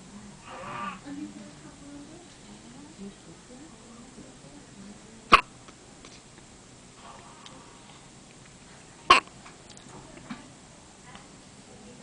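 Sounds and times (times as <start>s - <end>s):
sharp hiccups: 5.3s - 5.5s, 9.1s - 9.3s.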